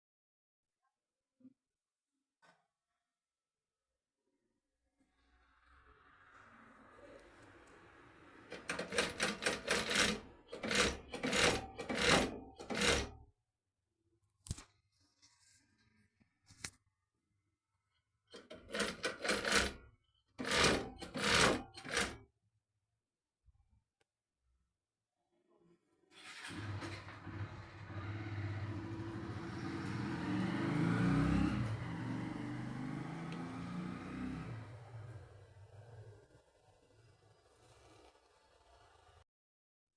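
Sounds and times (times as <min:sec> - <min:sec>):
sewing machine running: 0:08.3 - 0:13.2, 0:18.4 - 0:19.8, 0:20.4 - 0:22.2.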